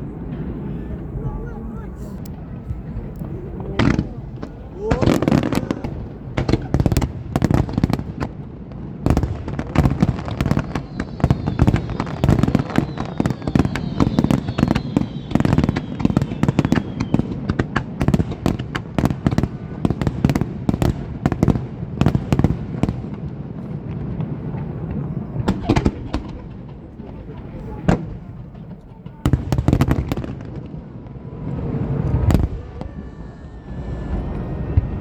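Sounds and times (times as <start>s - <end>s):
fireworks cracks and booms: 0.0s - 35.0s
faint falling whistles: 10.3s - 17.4s, 31.3s - 35.0s.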